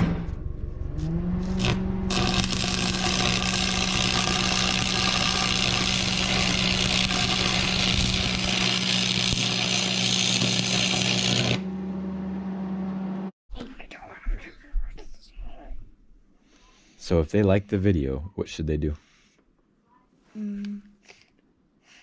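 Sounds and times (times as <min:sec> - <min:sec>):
angle grinder motor whining: 0:00.9 - 0:11.9
grinder grinding steel: 0:01.0 - 0:11.7.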